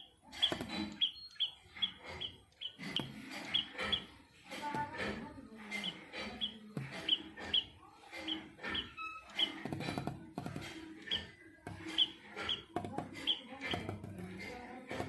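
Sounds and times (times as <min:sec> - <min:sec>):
bird pecking at window glass: 0:00.3 - 0:05.0, 0:05.6 - 0:15.0
high bird chirps: 0:00.4 - 0:04.2, 0:05.7 - 0:09.6, 0:11.0 - 0:13.5.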